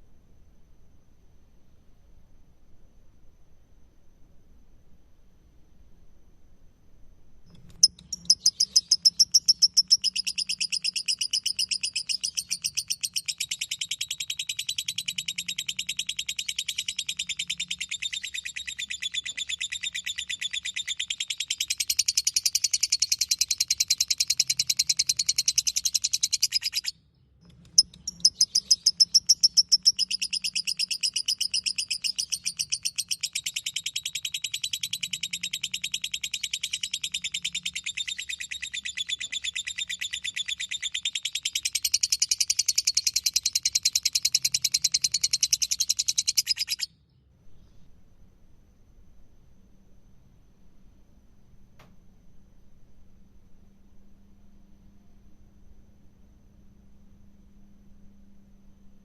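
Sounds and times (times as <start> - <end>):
lovebird chattering: 7.7 - 26.9, 27.6 - 46.9.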